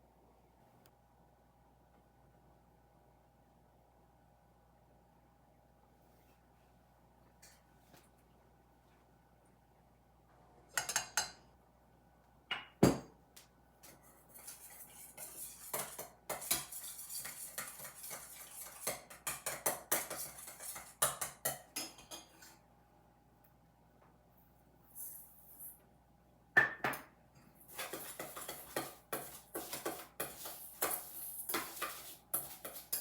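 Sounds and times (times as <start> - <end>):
cutlery scraping a bowl: 10.8 - 11.4, 13.8 - 22.6, 27.4 - 33.0.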